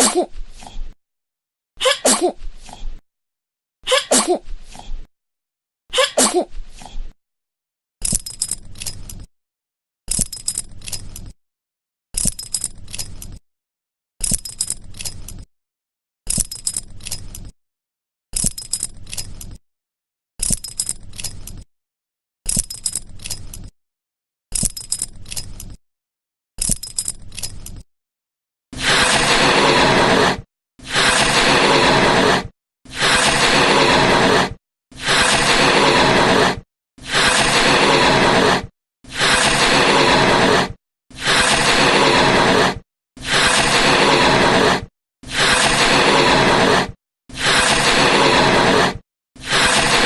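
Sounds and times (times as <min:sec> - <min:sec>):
baby sneezing: 0:00.0 - 0:00.3, 0:01.8 - 0:02.4, 0:03.9 - 0:04.4, 0:05.9 - 0:06.5.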